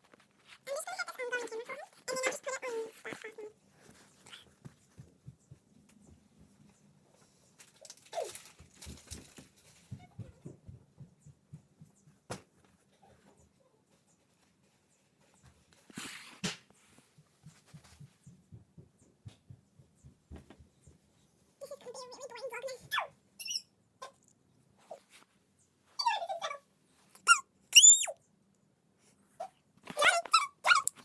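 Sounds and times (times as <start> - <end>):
rustling: 0.0 - 10.2, 12.2 - 18.3.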